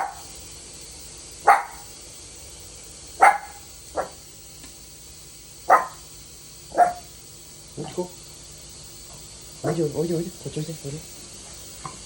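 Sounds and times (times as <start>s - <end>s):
dog barking: 0.0s - 0.3s, 1.4s - 1.9s, 3.2s - 4.2s, 5.7s - 6.0s, 6.7s - 7.1s.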